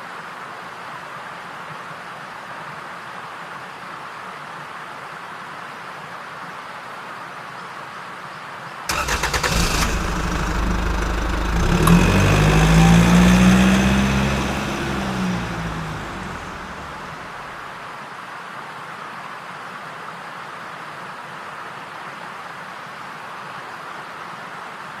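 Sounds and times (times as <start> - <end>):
engine cranking: 8.9 - 17.6
engine running: 8.9 - 17.6.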